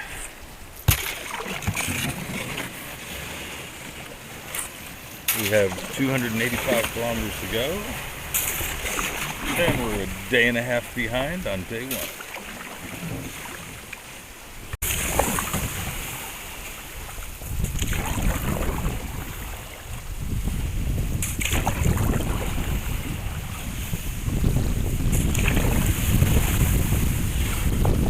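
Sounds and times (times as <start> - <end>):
faint water sounds: 0.0 - 28.0
wind buffeting microphone: 14.5 - 28.0.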